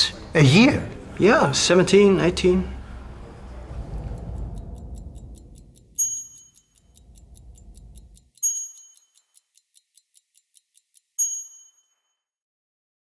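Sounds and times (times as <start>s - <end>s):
clock ticking: 3.7s - 11.9s
high ringing dings: 6.0s - 7.0s, 8.3s - 9.6s, 11.2s - 12.2s.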